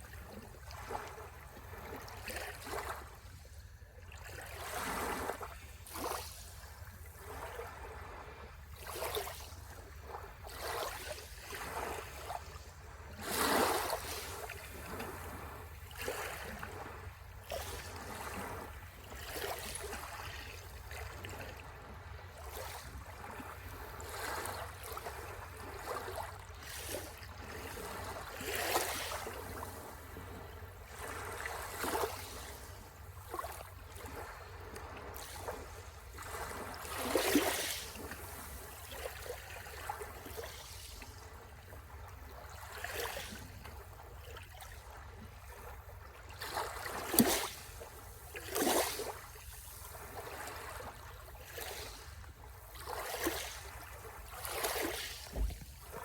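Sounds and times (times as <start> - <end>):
sea waves washing ashore: 21.6 - 41.0.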